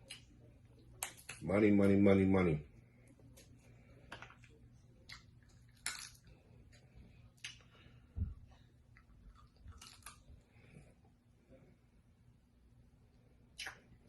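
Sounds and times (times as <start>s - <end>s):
person chewing: 3.1s - 10.8s.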